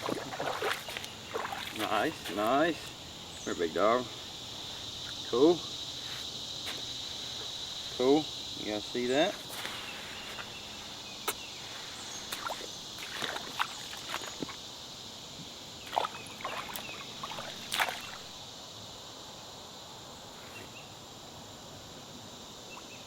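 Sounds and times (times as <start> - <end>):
water splashes: 0.0 - 3.0, 11.3 - 14.6, 15.8 - 18.4
high drone of insects: 0.0 - 23.0.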